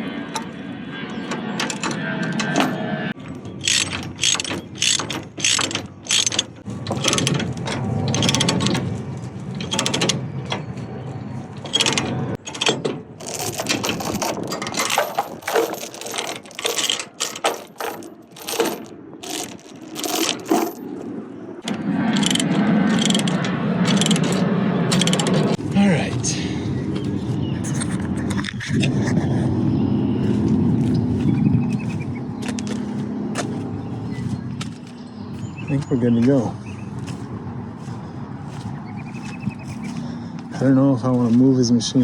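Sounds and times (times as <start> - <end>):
low hum: 0.0 - 42.0
ratchet pawl clicking: 3.6 - 7.3.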